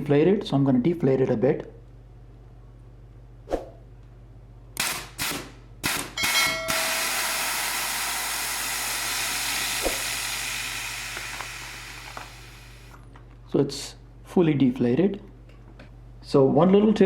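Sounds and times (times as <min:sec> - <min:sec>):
air hissing from tyre valve: 0:06.7 - 0:13.0.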